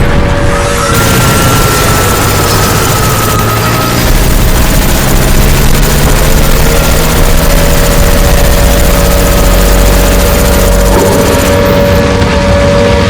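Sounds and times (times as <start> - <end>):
engine-like rumble: 0.0 - 13.0
steady hum: 0.0 - 13.0.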